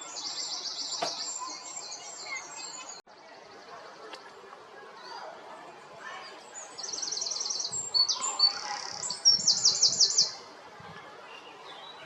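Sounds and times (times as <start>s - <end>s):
songbird singing trills: 6.6s - 10.4s.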